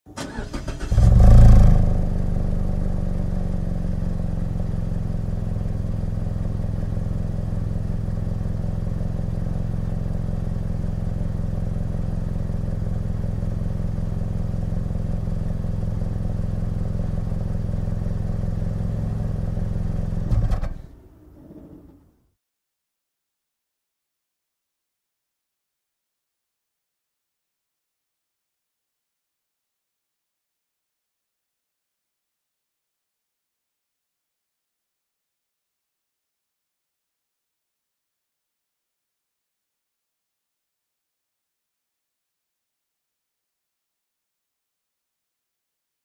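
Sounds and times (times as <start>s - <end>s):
car engine revving and idling: 0.1s - 20.9s.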